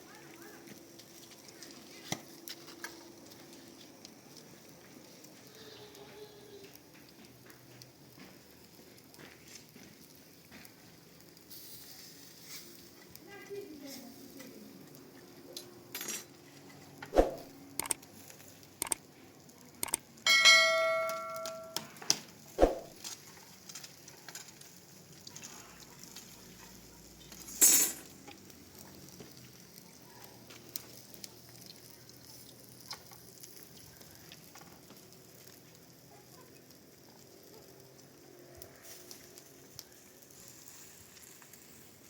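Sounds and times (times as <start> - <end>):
metal pot ringing: 20.3 - 21.8.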